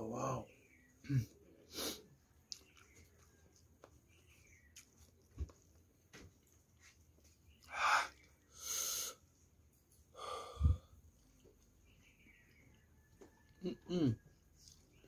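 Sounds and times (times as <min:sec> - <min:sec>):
hissing breath: 0:01.7 - 0:02.0, 0:07.7 - 0:09.2, 0:10.2 - 0:10.9
man breathing hard: 0:10.2 - 0:10.9.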